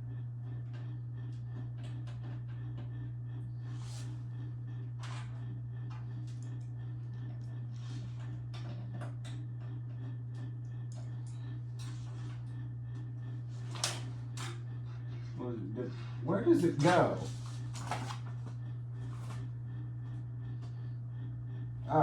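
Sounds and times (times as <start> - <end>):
steady low hum: 0.0 - 22.0
rustling and clicks of cables: 16.6 - 19.5.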